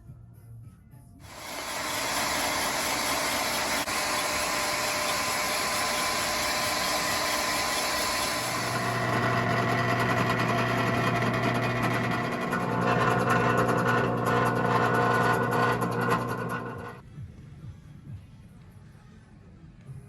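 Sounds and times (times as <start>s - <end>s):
scooter engine starting and running: 1.3s - 17.0s.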